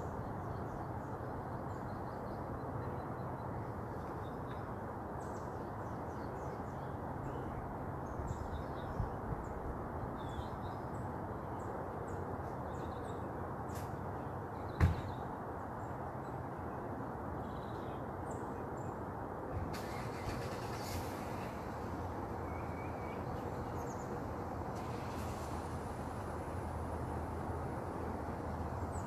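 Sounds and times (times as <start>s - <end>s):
sharp knock: 14.8s - 15.2s.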